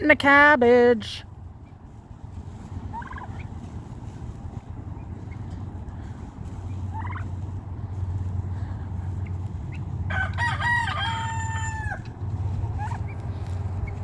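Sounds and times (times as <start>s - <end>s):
steady low hum: 0.0s - 14.0s
rooster crowing: 10.1s - 12.1s.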